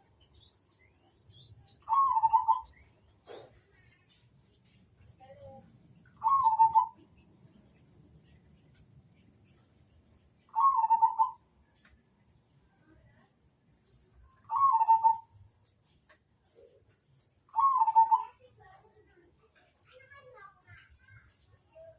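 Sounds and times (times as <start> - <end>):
dove cooing: 1.8 - 2.7, 6.2 - 7.0, 10.6 - 11.4, 14.5 - 15.2, 17.5 - 18.2.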